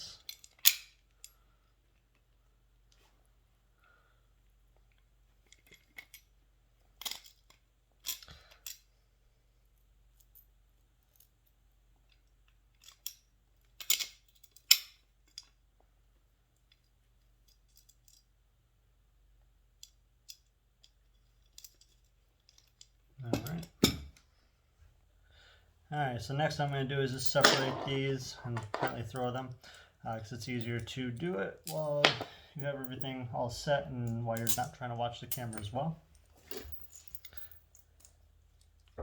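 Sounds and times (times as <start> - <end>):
metal bolts and nuts clinking: 5.4 - 8.9, 12.1 - 15.6, 19.8 - 24.2, 26.5 - 33.2, 34.0 - 39.0.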